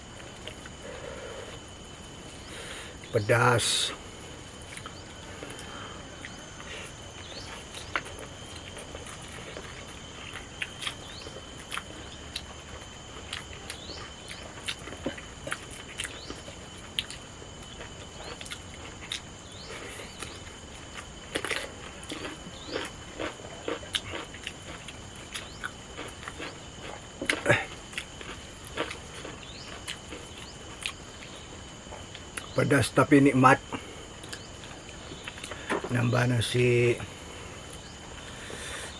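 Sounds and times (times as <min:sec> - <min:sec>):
high insect drone: 0:00.0 - 0:38.9
person chewing: 0:04.6 - 0:31.3.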